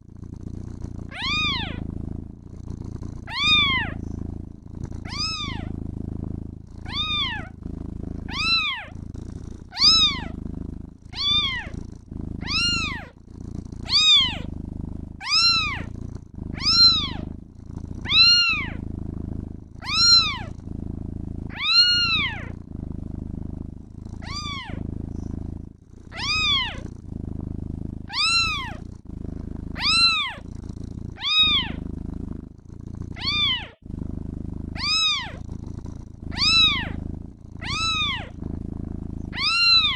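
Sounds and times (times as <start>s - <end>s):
kitten purring: 0.0s - 39.9s
kitten meowing: 1.1s - 1.8s, 3.3s - 4.0s, 5.0s - 5.7s, 6.8s - 7.6s, 8.3s - 9.0s, 9.7s - 10.4s, 11.2s - 11.8s, 12.4s - 13.1s, 13.9s - 14.5s, 15.2s - 15.9s, 16.6s - 17.3s, 18.0s - 18.8s, 19.8s - 20.5s, 21.5s - 22.5s, 24.2s - 24.8s, 26.1s - 26.8s, 28.1s - 28.8s, 29.8s - 30.4s, 31.2s - 31.8s, 33.2s - 33.8s, 34.8s - 35.4s, 36.3s - 37.0s, 37.6s - 38.4s, 39.3s - 39.9s.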